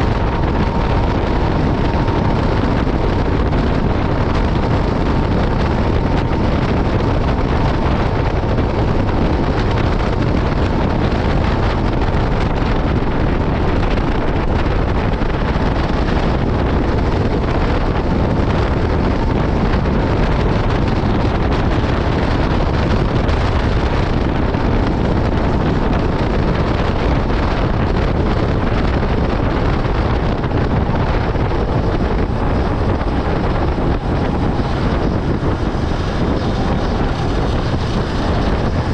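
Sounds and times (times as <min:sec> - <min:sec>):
motorcycle engine running: 0:00.0 - 0:38.9
wind on microphone: 0:00.0 - 0:38.9.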